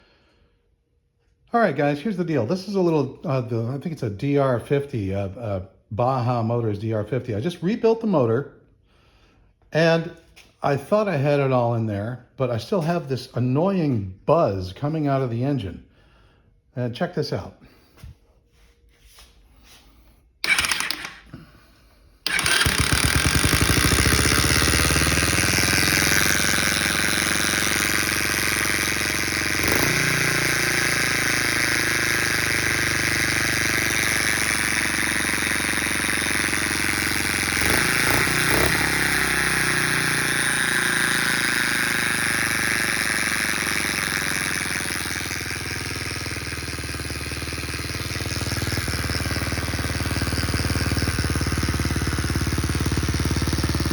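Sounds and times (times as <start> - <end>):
small motorcycle engine buzzing: 20.4 - 21.4, 22.2 - 53.9.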